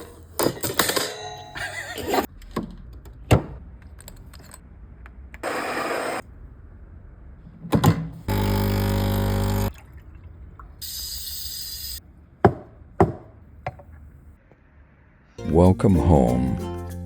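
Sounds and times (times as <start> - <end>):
coffee machine pump buzzing: 8.3 - 9.7.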